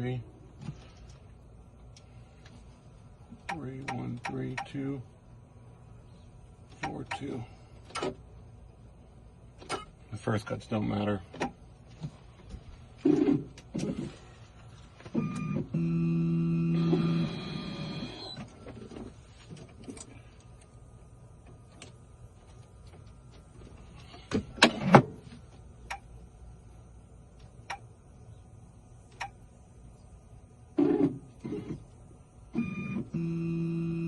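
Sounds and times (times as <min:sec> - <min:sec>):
sharp clicks: 0:03.4 - 0:04.8.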